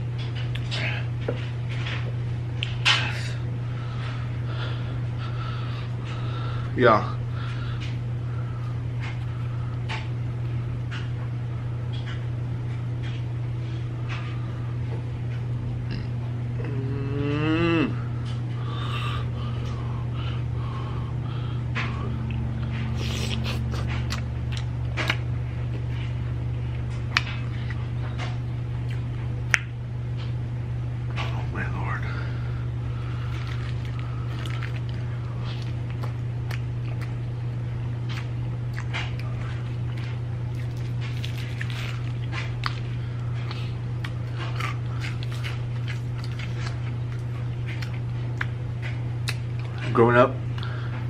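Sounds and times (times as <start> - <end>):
low electrical hum: 0.0 - 51.0
chewing with wet mouth clicks: 0.2 - 3.0, 21.8 - 30.4, 33.2 - 49.9, 50.5 - 50.8.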